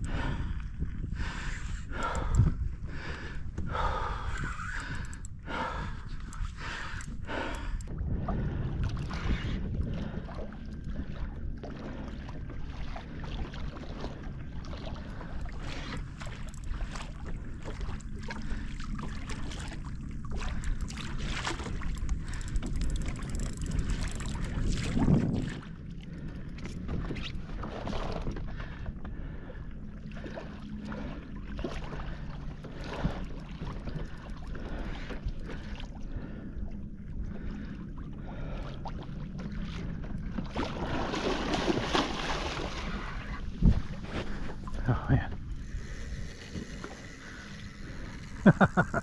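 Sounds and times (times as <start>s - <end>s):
gasping breaths: 0.0s - 11.1s
water sloshing and splashing: 0.0s - 49.0s.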